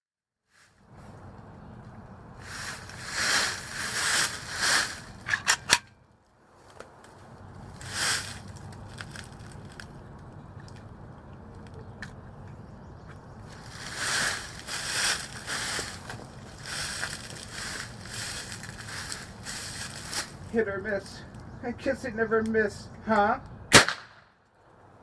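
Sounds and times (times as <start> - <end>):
rustling noise: 0.6 - 11.0, 13.4 - 20.6.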